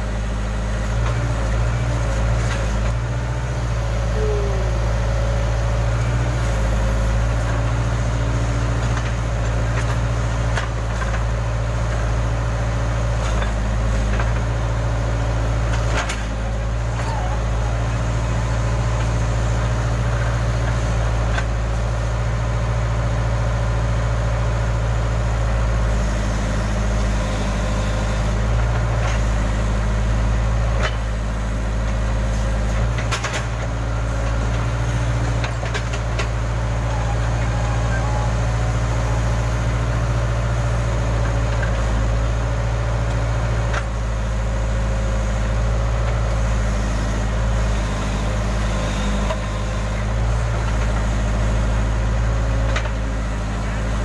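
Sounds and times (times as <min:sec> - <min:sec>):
diesel engine running: 0:00.0 - 0:54.0.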